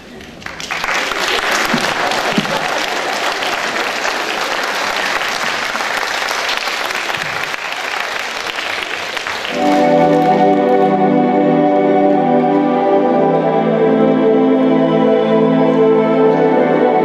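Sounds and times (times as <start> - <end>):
audience applauding: 0.0 - 10.9
keyboard organ-like chords: 9.5 - 17.0.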